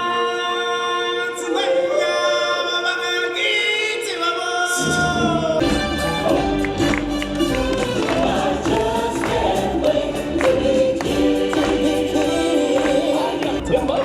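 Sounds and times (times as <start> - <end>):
group singing in harmony: 0.0 - 14.0
deep bass accompaniment: 5.3 - 14.0.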